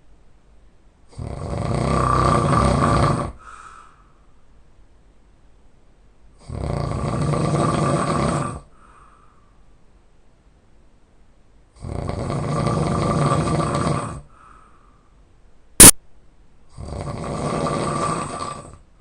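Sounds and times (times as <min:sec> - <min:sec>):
person snoring loudly: 0:01.1 - 0:03.4, 0:06.4 - 0:08.7, 0:11.8 - 0:14.2, 0:16.8 - 0:18.8
loud sharp click: 0:15.8 - 0:16.0.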